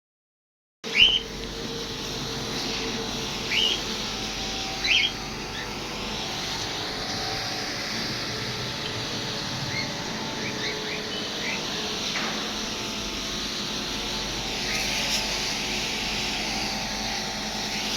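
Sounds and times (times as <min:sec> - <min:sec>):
small birds chirping: 0:00.9 - 0:01.8, 0:02.5 - 0:12.8
steady hiss: 0:01.2 - 0:17.9.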